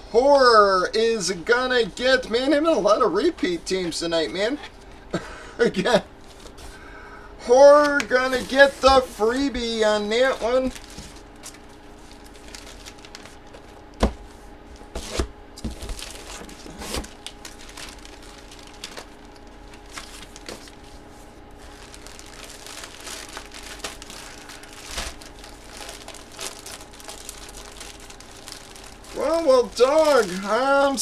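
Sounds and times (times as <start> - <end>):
plastic wrapping crinkling: 7.8 - 31.0.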